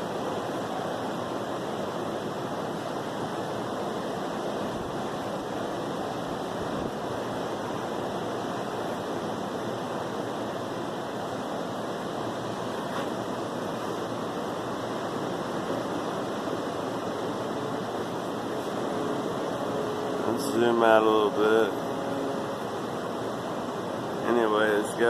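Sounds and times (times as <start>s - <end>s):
ocean waves breaking: 0.0s - 25.0s.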